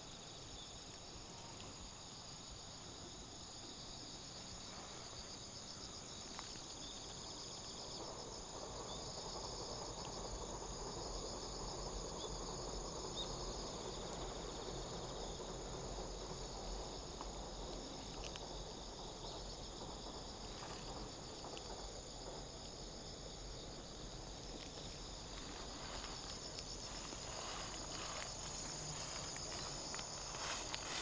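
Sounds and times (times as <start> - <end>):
crickets trilling: 0.0 - 31.0
low outdoor rumble: 6.8 - 31.0.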